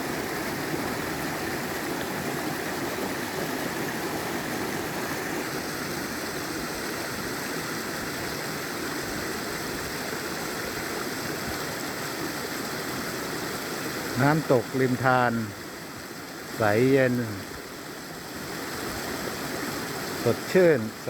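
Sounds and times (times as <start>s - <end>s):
waterfall rushing: 0.0s - 12.9s, 18.4s - 21.0s.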